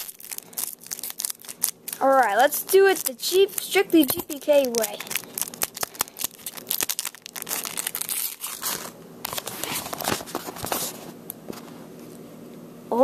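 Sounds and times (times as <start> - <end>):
wrapper tearing and crinkling: 0.0 - 11.0.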